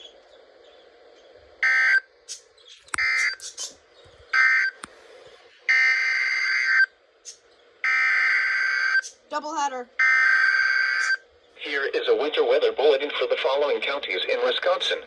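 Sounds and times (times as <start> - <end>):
faint radio hiss: 0.0 - 5.8, 11.0 - 15.0
short buzzing data bursts: 3.0 - 3.7.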